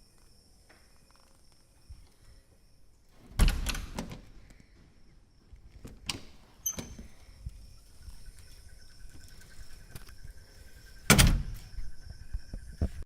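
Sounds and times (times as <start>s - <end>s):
door shutting with a thud: 3.2s - 4.3s, 11.0s - 11.8s
door latch clicking: 3.4s - 4.3s.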